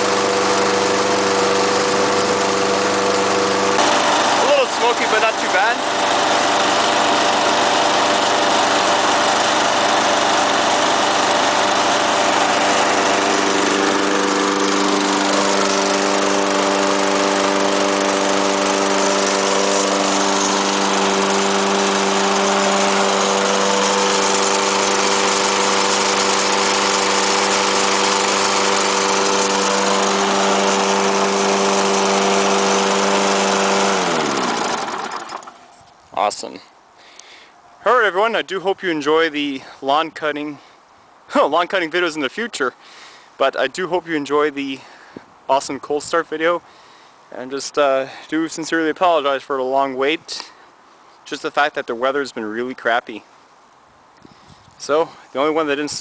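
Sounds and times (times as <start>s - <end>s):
lawn mower engine running: 0.0s - 35.8s.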